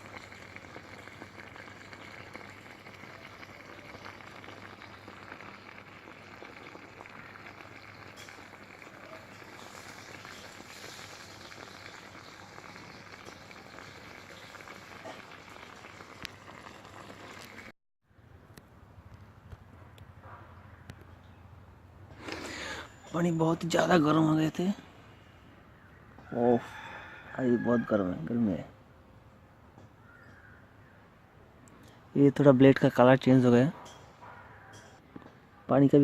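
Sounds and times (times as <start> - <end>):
water boiling with bubbling fizz: 0.0 - 17.7.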